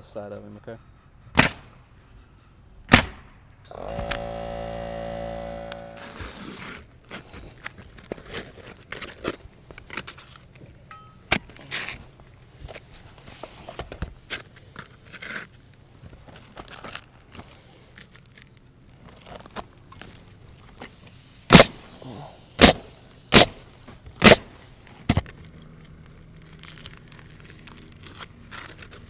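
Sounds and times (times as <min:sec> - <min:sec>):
sharp knock: 0:01.4 - 0:01.6
cordless drill driving screw: 0:03.7 - 0:06.3, 0:21.4 - 0:23.6.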